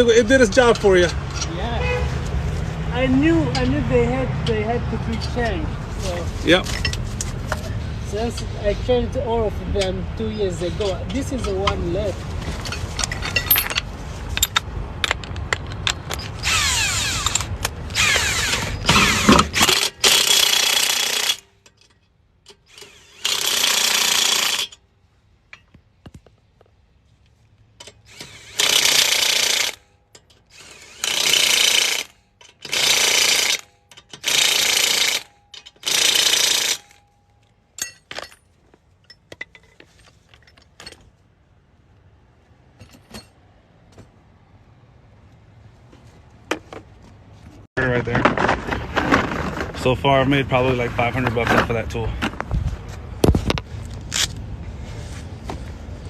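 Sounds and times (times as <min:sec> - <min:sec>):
impact wrench hammering: 0:27.8 - 0:29.8, 0:30.8 - 0:37.0.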